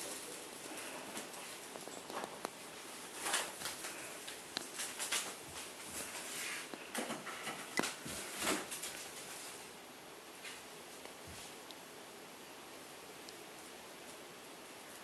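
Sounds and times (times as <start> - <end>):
cat rustling and scratching: 0.0 - 9.8, 10.4 - 11.7.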